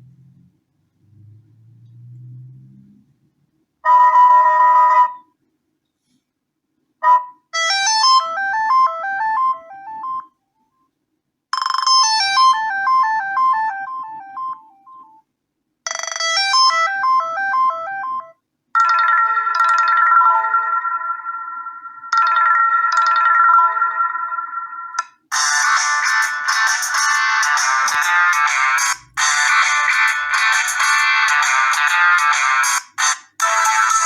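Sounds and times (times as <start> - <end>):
smartphone ringtone melodies: 7.0 - 10.3, 11.6 - 15.2, 15.9 - 34.0.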